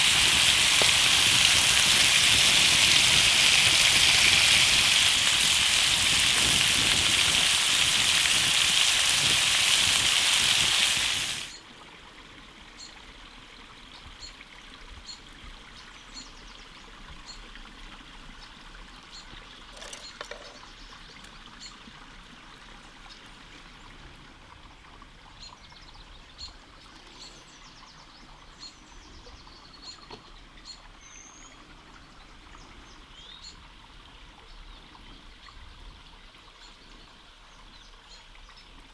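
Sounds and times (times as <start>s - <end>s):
loud rushing water: 0.0s - 11.6s.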